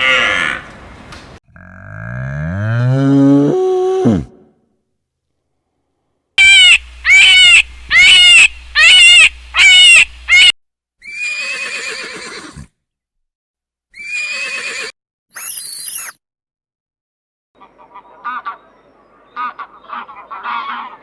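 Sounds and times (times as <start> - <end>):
horse neighing: 11.1 - 12.7, 14.0 - 14.9.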